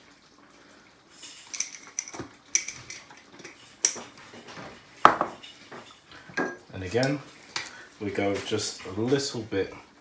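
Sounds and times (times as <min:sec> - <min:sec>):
utensils clinking: 0:01.2 - 0:07.9.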